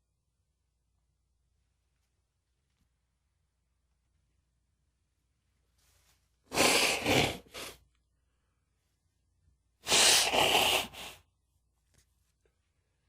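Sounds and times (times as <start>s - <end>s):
man sneezing: 6.5s - 7.8s, 9.8s - 11.2s.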